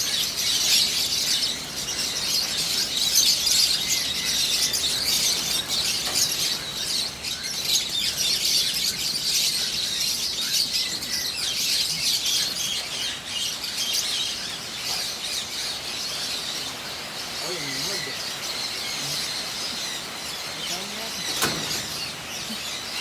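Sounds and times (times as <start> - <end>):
flock of birds chirping: 0.0 - 23.0.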